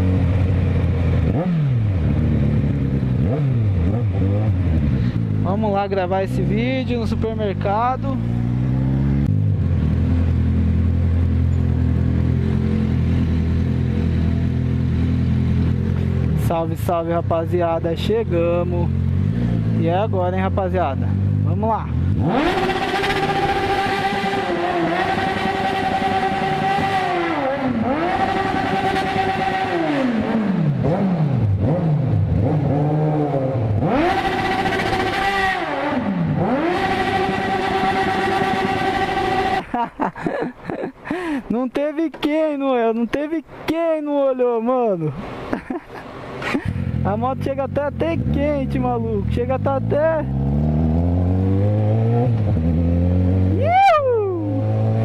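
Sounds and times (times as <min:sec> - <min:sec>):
motorcycle engine running: 0:00.0 - 0:27.0.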